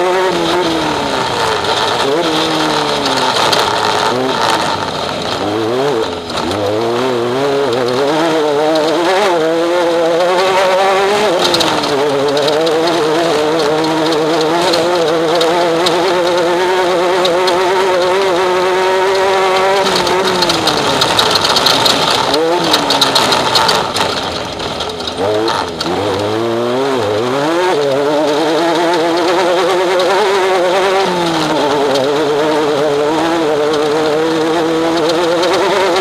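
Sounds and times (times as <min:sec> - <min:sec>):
race vehicle engine revving: 0:00.0 - 0:36.0.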